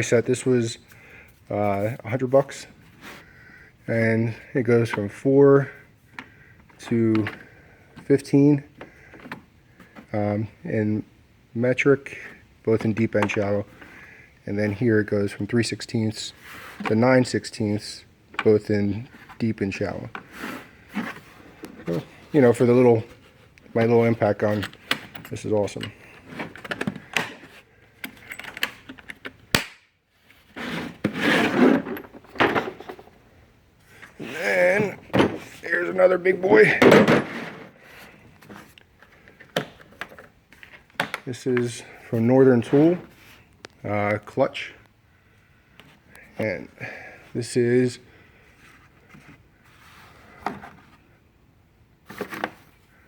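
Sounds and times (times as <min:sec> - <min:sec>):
socket sets rattling and clicking: 0:24.4 - 0:29.7.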